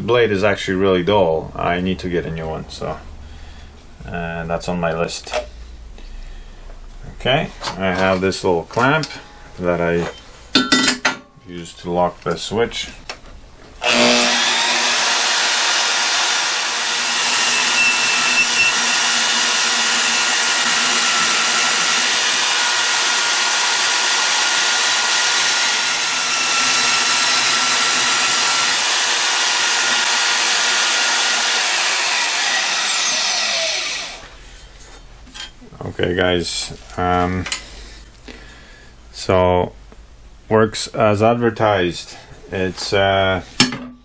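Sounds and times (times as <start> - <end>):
band saw motor whining: 13.8 - 34.4.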